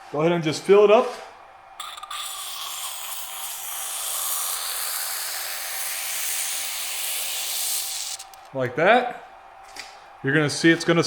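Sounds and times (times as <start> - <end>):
aerosol can spraying hiss: 2.0 - 8.5.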